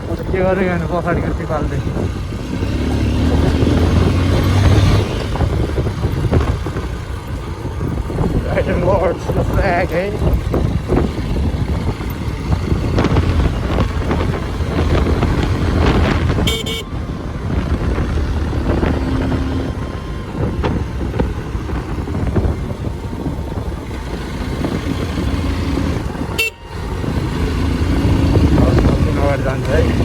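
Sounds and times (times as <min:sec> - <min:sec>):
motorcycle engine running: 0:00.0 - 0:30.0
short horn toot: 0:16.4 - 0:17.0, 0:26.4 - 0:26.8.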